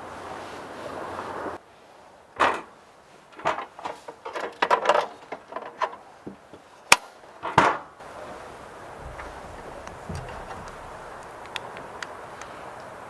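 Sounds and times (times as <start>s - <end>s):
objects knocking and clicking: 2.4s - 6.6s, 9.0s - 11.6s.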